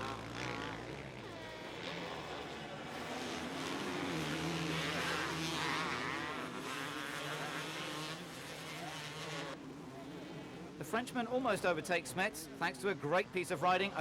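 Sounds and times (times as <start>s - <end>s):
motocross bike engines revving: 0.0s - 9.6s.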